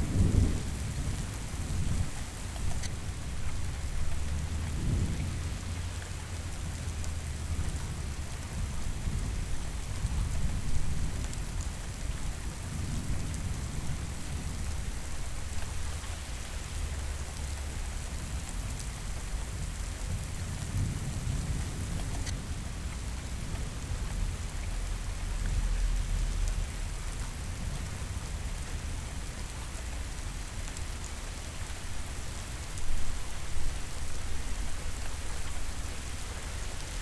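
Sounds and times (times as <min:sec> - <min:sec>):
rolling thunder rumbles: 0:00.0 - 0:02.2
heavy rain: 0:00.0 - 0:37.0.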